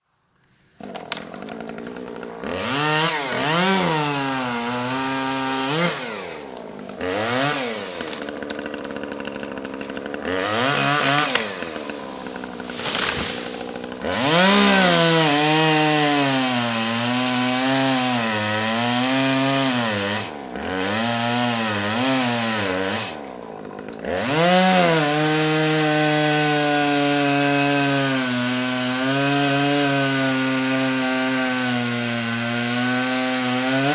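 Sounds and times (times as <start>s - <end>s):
chainsaw revving and cutting: 0.8s - 33.9s.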